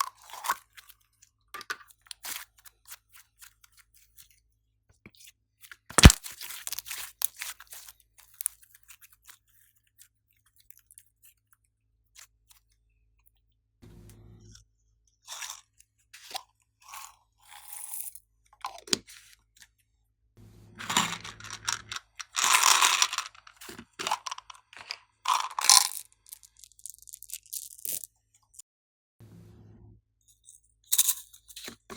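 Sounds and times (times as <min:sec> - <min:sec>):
slime crackling and popping: 0:05.9 - 0:07.5, 0:25.4 - 0:28.1.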